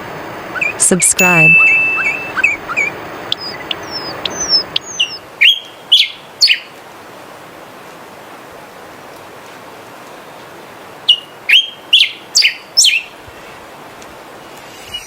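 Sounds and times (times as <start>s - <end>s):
songbird whistling and chirping: 0.5s - 0.8s, 1.4s - 6.7s, 11.1s - 13.1s
steady hiss: 2.4s - 15.0s.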